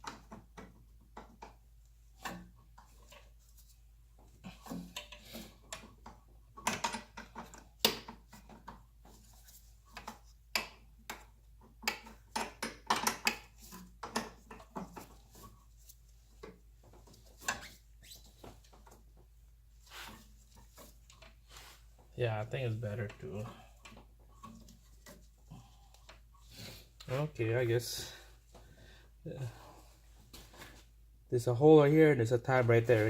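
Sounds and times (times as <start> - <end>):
fittings being handled: 2.2 - 22.2, 22.9 - 27.1.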